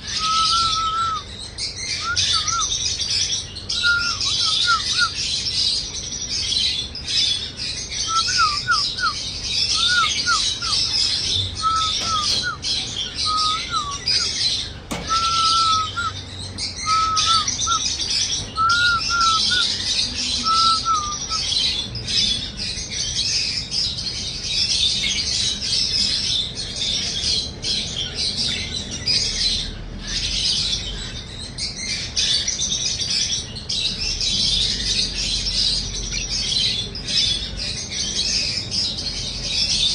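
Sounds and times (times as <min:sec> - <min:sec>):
bird whistling: 0:00.0 - 0:05.3, 0:07.8 - 0:22.5, 0:23.1 - 0:30.2
birds chirping: 0:00.0 - 0:39.9.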